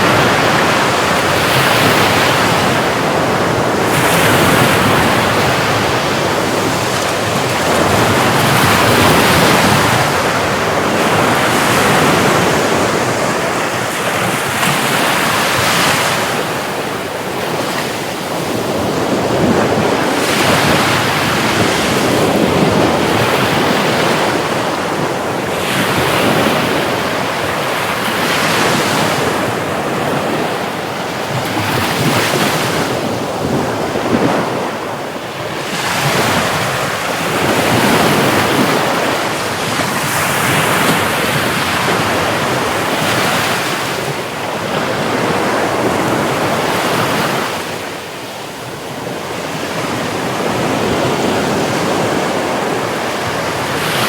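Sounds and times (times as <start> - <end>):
sea waves breaking: 0.0 - 54.0.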